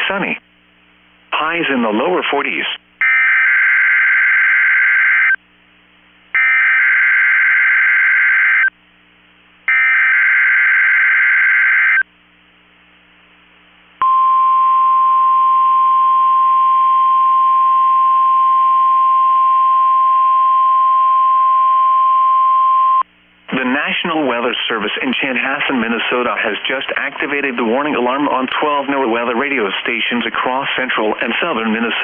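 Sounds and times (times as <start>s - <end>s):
steady warning alarm tone: 6.4s - 8.7s, 9.7s - 12.0s.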